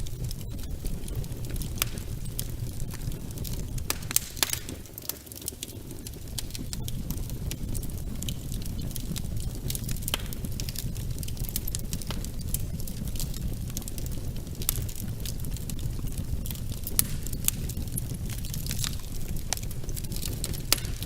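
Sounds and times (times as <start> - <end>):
wood fire crackling and popping: 0.0 - 21.0.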